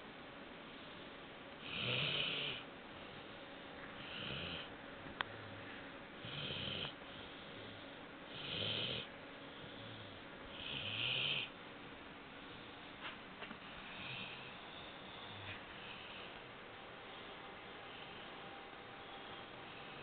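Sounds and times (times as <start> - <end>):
puppy snoring: 1.6 - 2.7, 4.0 - 4.7, 6.2 - 11.5, 13.7 - 14.6.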